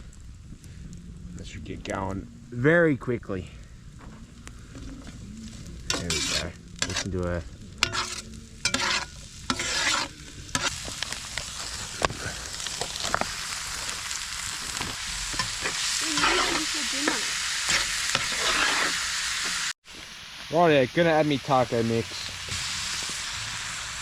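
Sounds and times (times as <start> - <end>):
mince and onions sizzling: 0.0 - 24.0
utensil scraping pot: 4.7 - 13.3, 14.4 - 19.6.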